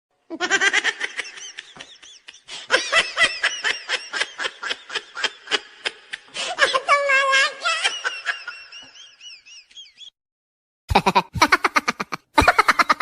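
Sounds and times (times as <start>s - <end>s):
person laughing: 10.9s - 13.0s.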